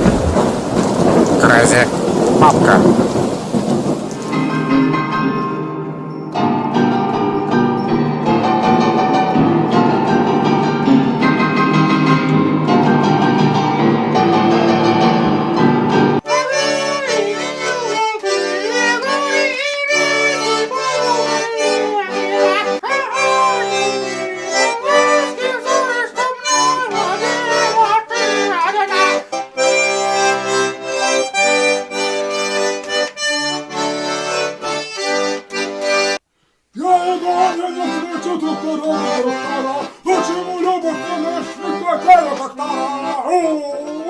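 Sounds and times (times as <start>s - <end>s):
other music: 4.3s - 36.2s
button accordion playing lively tune: 6.3s - 36.2s, 36.8s - 44.0s.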